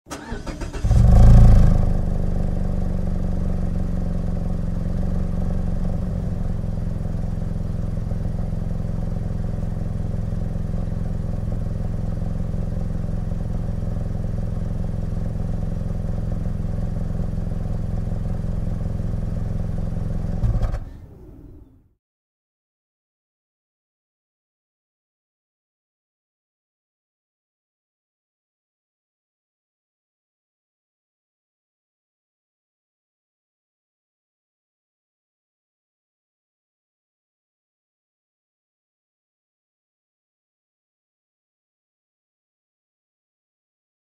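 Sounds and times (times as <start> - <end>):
starter motor cranking: 0.1 - 1.1
car engine revving and idling: 0.1 - 21.9.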